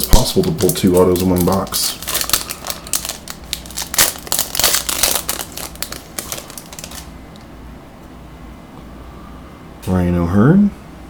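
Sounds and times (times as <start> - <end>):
foil wrapper crinkling and tearing: 0.0 - 7.1.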